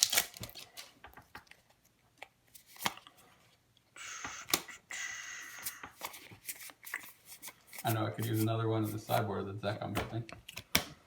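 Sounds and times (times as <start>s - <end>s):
cards being shuffled: 0.0s - 3.0s, 5.6s - 9.2s
cards clicking and tapping: 9.9s - 11.0s.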